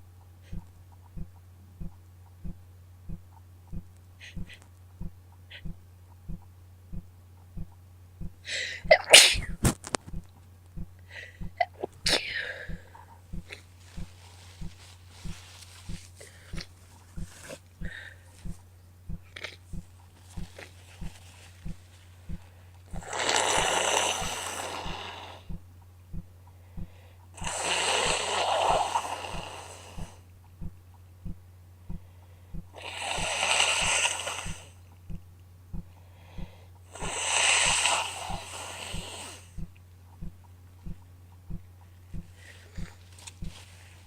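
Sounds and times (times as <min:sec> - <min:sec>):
faint ticking: 0:00.0 - 0:09.1, 0:09.9 - 0:43.6
low hum: 0:00.0 - 0:44.0
woman blowing her nose: 0:08.5 - 0:09.7, 0:23.0 - 0:25.4, 0:27.4 - 0:30.1, 0:32.8 - 0:34.7, 0:37.0 - 0:39.6.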